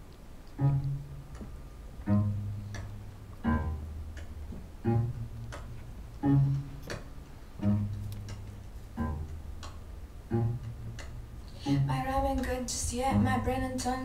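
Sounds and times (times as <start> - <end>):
deep plucked bass notes: 0.0 - 13.9
light tick: 2.7 - 3.4, 4.1 - 4.4, 5.4 - 6.2.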